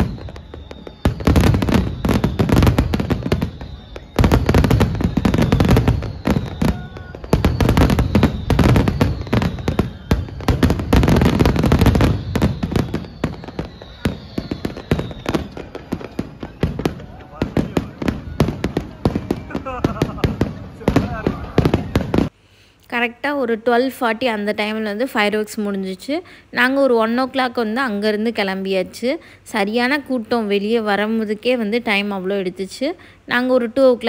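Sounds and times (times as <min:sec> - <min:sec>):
faint falling whistles: 0:00.0 - 0:19.7
deep fireworks booms: 0:00.0 - 0:22.3
fireworks bangs and crackles: 0:00.0 - 0:22.3.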